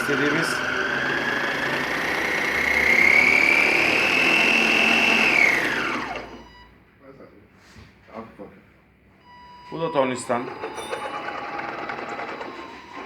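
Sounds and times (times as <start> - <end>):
electric motor whine: 0.0 - 6.6, 10.2 - 13.0.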